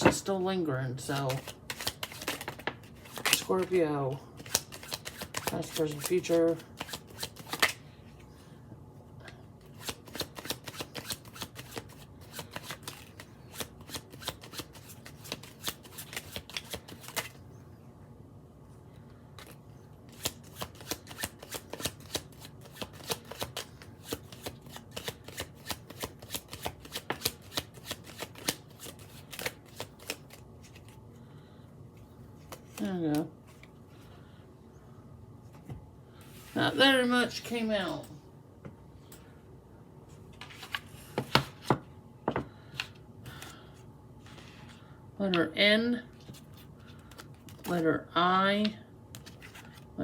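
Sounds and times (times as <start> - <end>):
cards being shuffled: 1.0 - 7.8, 9.7 - 17.4, 19.4 - 31.0, 32.4 - 33.7, 40.3 - 41.8, 46.2 - 47.8, 49.1 - 49.9.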